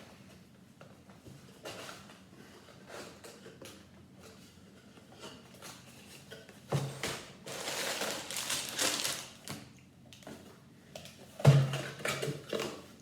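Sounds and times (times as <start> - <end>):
packaging crinkling and rustling: 7.1 - 10.3.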